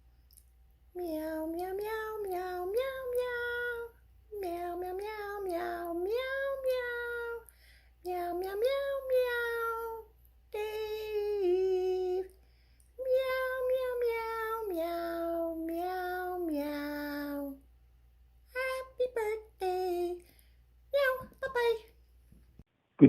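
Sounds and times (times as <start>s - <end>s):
high voice singing: 1.0s - 7.4s, 8.1s - 12.3s, 13.0s - 17.6s, 18.6s - 20.2s.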